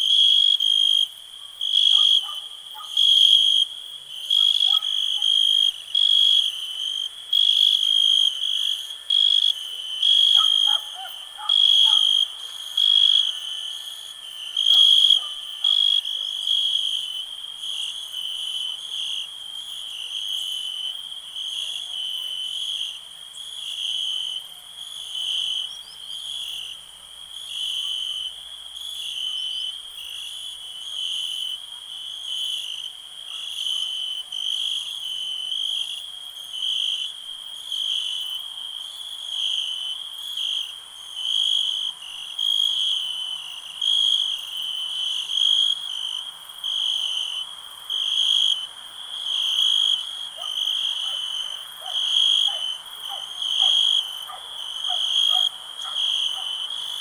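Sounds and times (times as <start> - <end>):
crickets chirping: 0.0 - 57.0.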